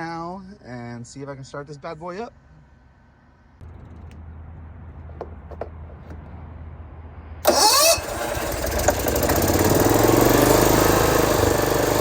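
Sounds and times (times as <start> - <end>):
generator cranking with falling whine: 7.4 - 12.0
generator engine running: 7.4 - 12.0.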